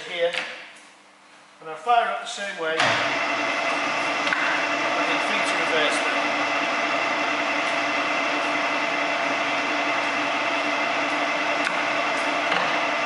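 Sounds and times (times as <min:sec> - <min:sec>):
metal lathe hum and gear whine: 0:03.0 - 0:13.0.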